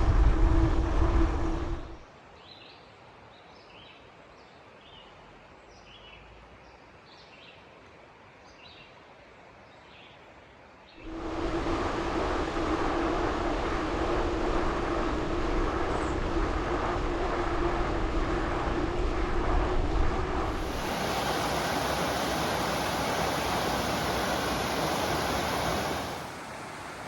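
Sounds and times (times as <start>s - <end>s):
wind on microphone: 0.0s - 2.0s, 11.0s - 27.0s
steady hum: 11.0s - 27.0s.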